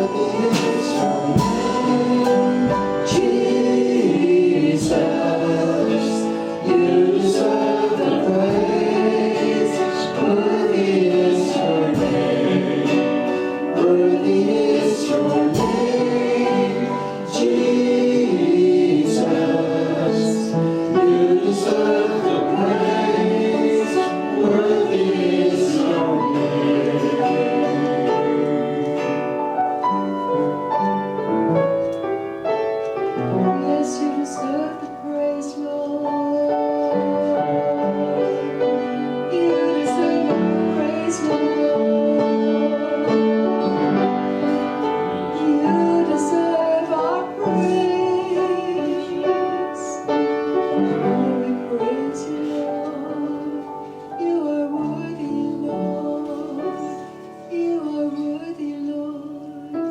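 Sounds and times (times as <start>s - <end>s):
group singing gospel: 0.0s - 31.0s, 33.3s - 59.9s
band playing: 0.0s - 54.4s
drum hits: 0.1s - 3.7s, 15.4s - 16.7s.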